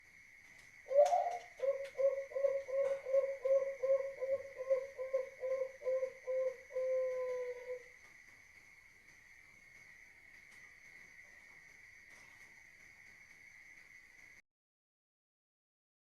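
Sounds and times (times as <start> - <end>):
dove cooing: 0.9 - 7.9.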